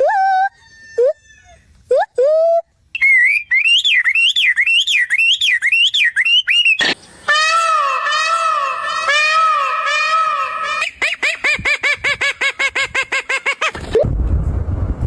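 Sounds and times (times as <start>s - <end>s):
high warbling animal whistle: 3.0s - 11.8s
low swooping animal call: 7.2s - 11.4s.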